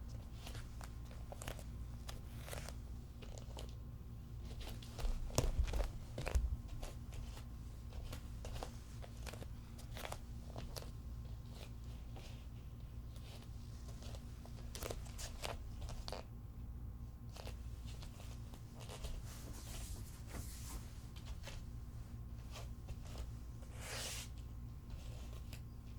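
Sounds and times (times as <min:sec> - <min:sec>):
low room hum: 0:00.0 - 0:25.9
bare feet walking on hard floor: 0:04.4 - 0:12.2, 0:17.4 - 0:25.6.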